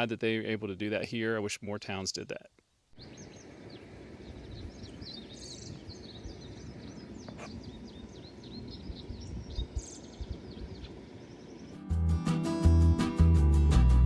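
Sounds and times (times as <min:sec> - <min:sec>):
wind rumble on microphone: 0:03.0 - 0:11.7
many birds chirping: 0:03.0 - 0:11.8.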